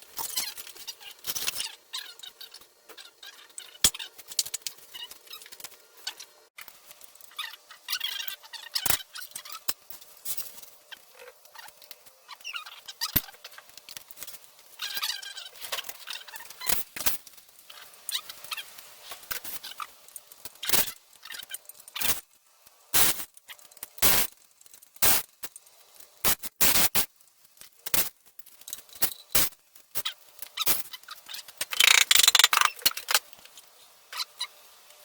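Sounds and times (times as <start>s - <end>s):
squeaky scraping: 31.3s - 33.3s
metal tools clicking and knocking: 31.6s - 33.5s.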